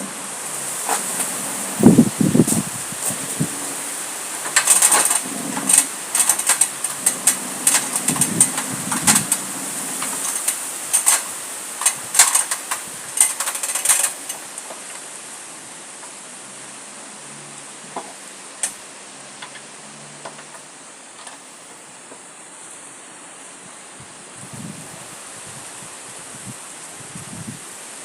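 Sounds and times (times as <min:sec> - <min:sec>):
irregular clicks and rattles: 0:00.7 - 0:03.5, 0:04.2 - 0:15.2, 0:17.9 - 0:22.2.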